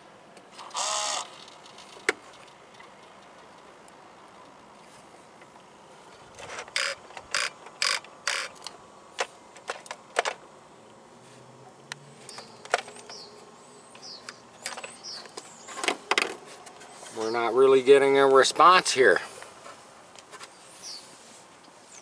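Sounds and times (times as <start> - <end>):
rc car drivetrain spurts: 0.6 - 2.0.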